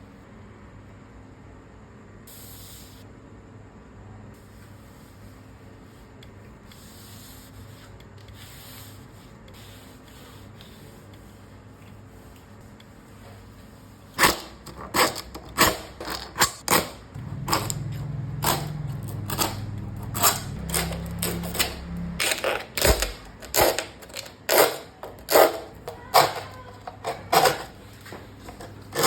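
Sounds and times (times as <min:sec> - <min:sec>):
hand file rasping: 0:14.2 - 0:22.6.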